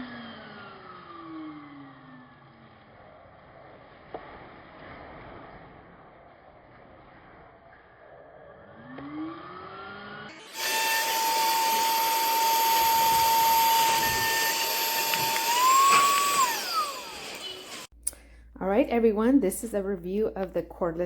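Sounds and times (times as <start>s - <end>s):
handheld vacuum whining: 10.3s - 17.9s.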